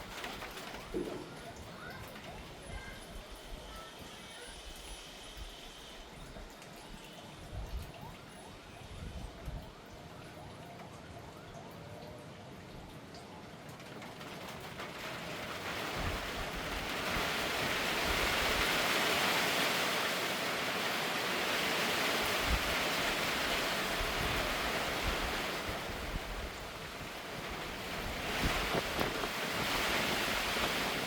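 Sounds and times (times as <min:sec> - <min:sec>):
rain hissing: 0:00.0 - 0:09.9, 0:12.9 - 0:31.0
wind buffeting microphone: 0:22.1 - 0:31.0.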